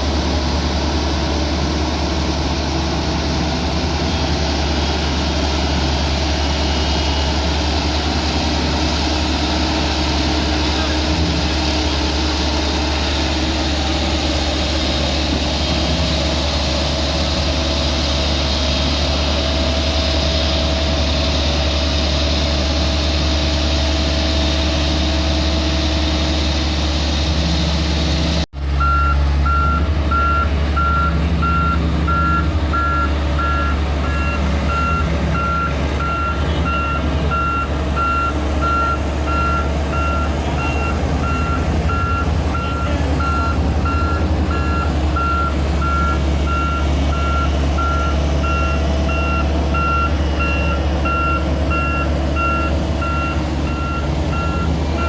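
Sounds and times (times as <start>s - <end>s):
diesel engine running: 0.0s - 55.0s
reversing alarm beeping: 28.8s - 55.0s.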